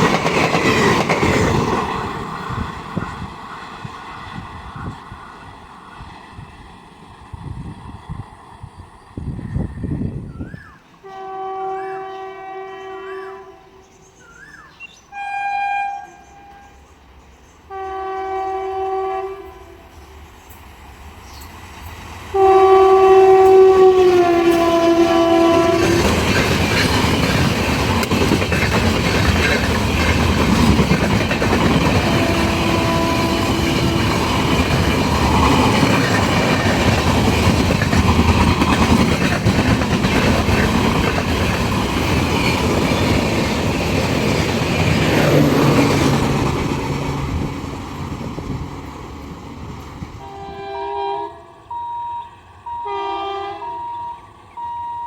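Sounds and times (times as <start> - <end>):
train running past: 0.0 - 55.0
train horn blasts: 11.0 - 13.9, 15.1 - 16.9, 17.7 - 20.0, 22.4 - 26.3, 31.8 - 34.7, 50.2 - 54.9.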